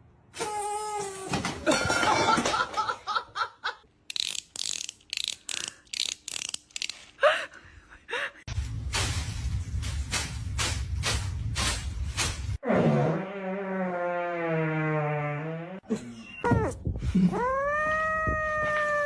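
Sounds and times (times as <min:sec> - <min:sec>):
person laughing: 0:07.2 - 0:08.5.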